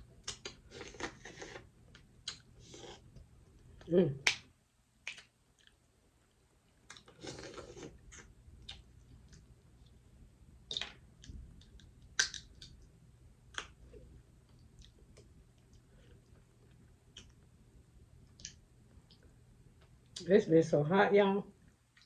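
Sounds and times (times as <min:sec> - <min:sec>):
mouth clicks and lip smacks: 0:00.2 - 0:01.6, 0:02.2 - 0:02.9, 0:05.0 - 0:05.8, 0:10.7 - 0:12.8, 0:17.1 - 0:17.4.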